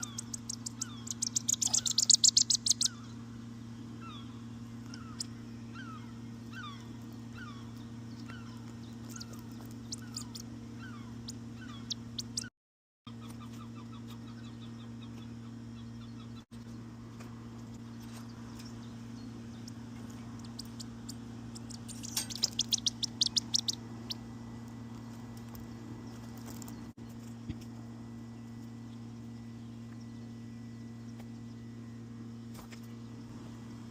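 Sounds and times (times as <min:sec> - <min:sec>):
rapid high-pitched bird calls: 0:00.0 - 0:03.2, 0:04.0 - 0:12.5, 0:19.5 - 0:24.3
soft falling bird chirps: 0:00.0 - 0:03.2, 0:16.6 - 0:27.7
steady low hum: 0:00.0 - 0:12.5, 0:13.1 - 0:33.9.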